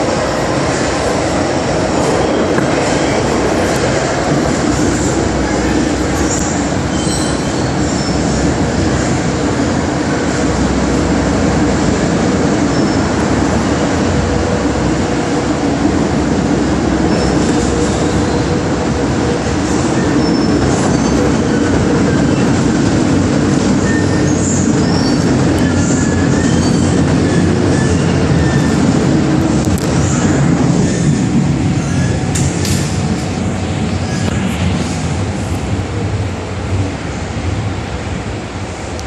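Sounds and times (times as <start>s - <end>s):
train wheels rumbling on rail: 0.0s - 39.0s
high wheel squeals: 5.4s - 8.4s, 23.8s - 29.0s.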